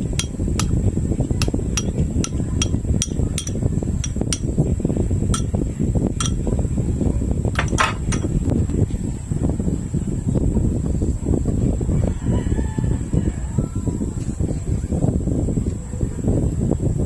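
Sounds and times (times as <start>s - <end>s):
steady low rumble: 0.0s - 12.1s.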